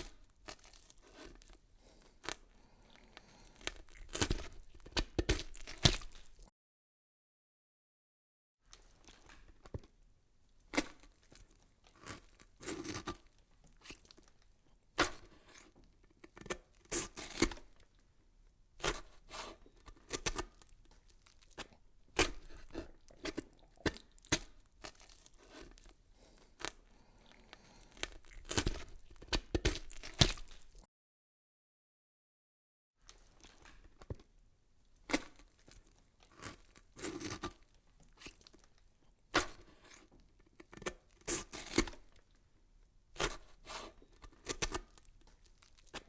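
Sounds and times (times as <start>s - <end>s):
irregular crunching and crackling: 0.0s - 6.5s, 8.7s - 9.9s, 18.8s - 30.8s, 33.1s - 42.4s, 43.2s - 46.0s.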